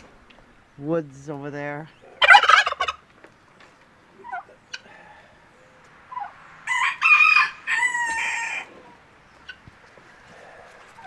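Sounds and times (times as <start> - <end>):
rooster crowing: 6.6 - 9.0.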